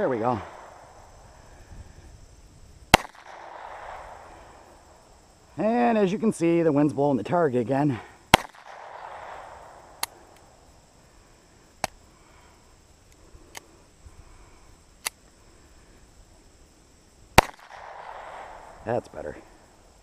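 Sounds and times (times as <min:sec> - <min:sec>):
pistol shot echoing: 0:02.9 - 0:04.3, 0:08.3 - 0:10.4, 0:17.4 - 0:18.8
faint sharp cracks: 0:08.3 - 0:10.5, 0:17.4 - 0:18.8.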